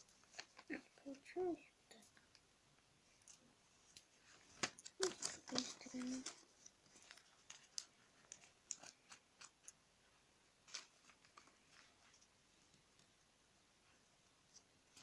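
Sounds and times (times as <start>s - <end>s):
paper being folded and creased: 0.0s - 1.3s, 4.0s - 9.8s, 10.6s - 12.2s.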